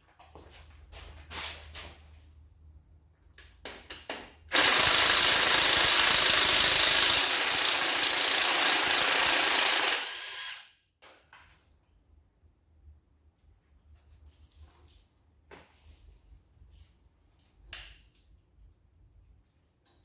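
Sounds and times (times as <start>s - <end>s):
impact wrench hammering: 4.5s - 10.6s.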